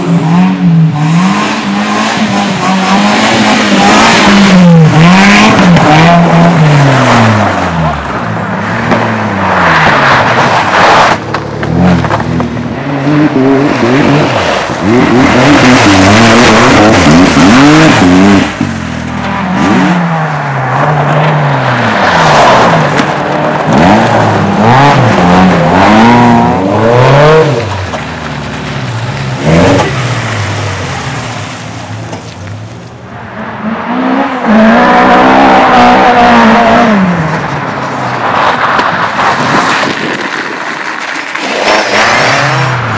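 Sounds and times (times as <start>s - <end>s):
race car engines revving: 0.0s - 42.9s.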